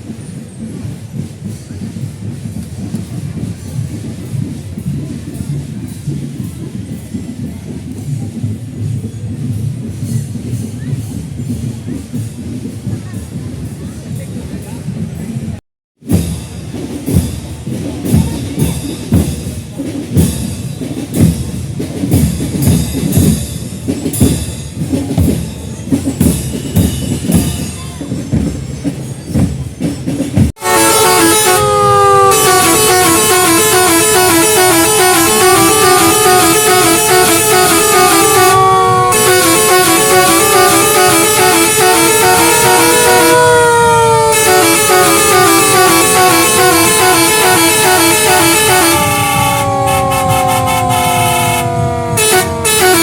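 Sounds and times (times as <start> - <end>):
jumble of uneven beats and noise: 0.0 - 53.0
multi-tone air horn melody: 30.6 - 53.0.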